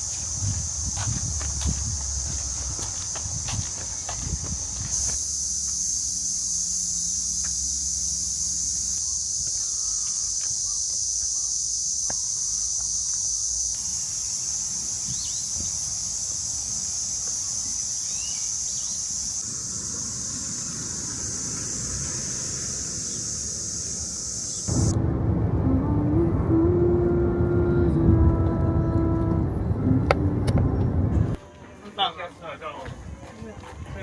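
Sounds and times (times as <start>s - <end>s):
insects droning: 0.0s - 34.0s
bird chirps: 3.8s - 11.6s, 17.9s - 19.3s.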